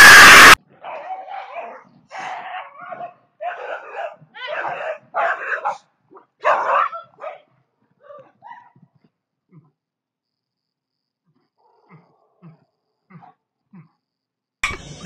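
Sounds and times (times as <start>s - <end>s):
dogs barking: 0.7s - 8.8s.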